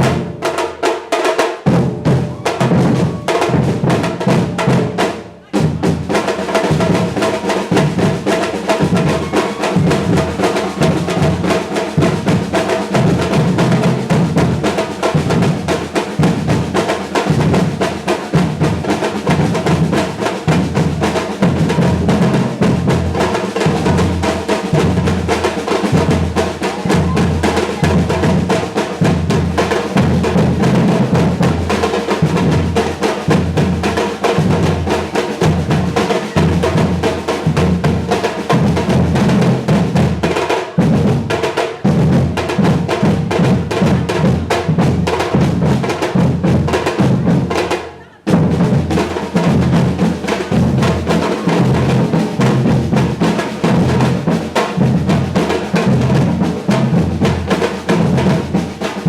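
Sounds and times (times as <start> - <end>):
bass drum beats: 0.0 - 0.4, 1.7 - 40.2, 48.3 - 58.6
snare drumming: 0.0 - 59.0.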